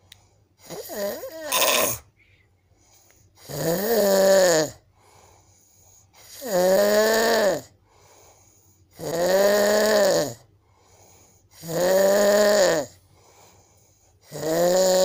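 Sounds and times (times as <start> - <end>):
man snoring loudly: 0.7 - 2.0, 3.4 - 4.8, 6.2 - 7.7, 8.9 - 10.4, 11.6 - 13.0, 14.2 - 15.0.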